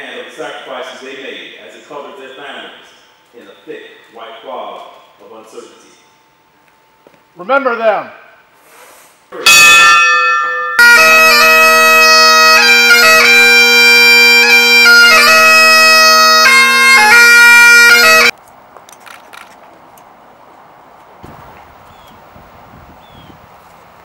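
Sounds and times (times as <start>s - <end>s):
bagpipes playing slow tune: 9.4s - 18.4s.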